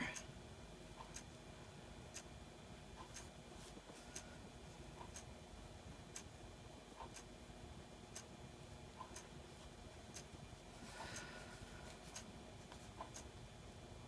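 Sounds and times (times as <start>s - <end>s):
clock ticking: 0.9s - 1.4s, 2.1s - 3.3s, 4.9s - 7.4s, 8.1s - 9.4s, 10.1s - 10.4s, 13.0s - 13.4s
soft rustle: 3.2s - 4.9s, 10.5s - 13.1s.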